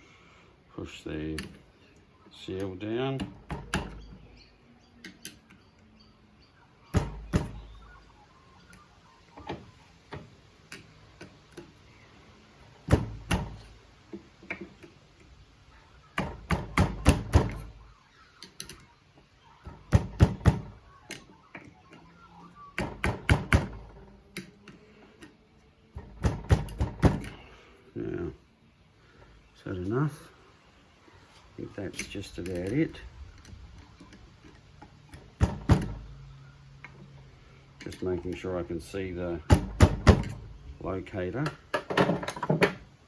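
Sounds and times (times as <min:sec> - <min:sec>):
sharp knocks tapping metal seal: 0:02.6 - 0:04.2, 0:06.9 - 0:07.8, 0:12.8 - 0:15.3, 0:16.2 - 0:17.8, 0:19.6 - 0:21.7, 0:22.8 - 0:25.3, 0:25.9 - 0:27.4, 0:34.0 - 0:36.2, 0:39.5 - 0:40.5.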